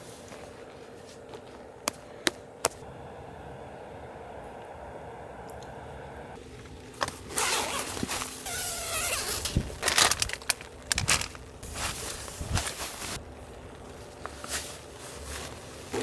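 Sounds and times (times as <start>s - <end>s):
handling noises rustling gear: 6.4s - 16.0s.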